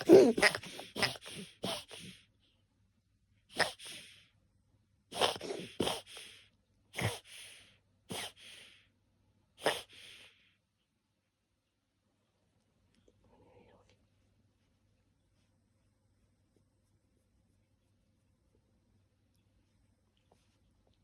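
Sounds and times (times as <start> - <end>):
person gasping for air: 0.0 - 2.2, 5.2 - 6.4.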